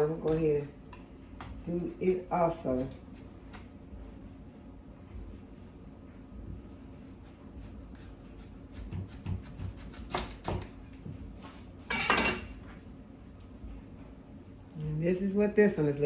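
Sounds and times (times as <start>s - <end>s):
knife rasping through squash: 1.7s - 3.8s, 6.9s - 10.9s.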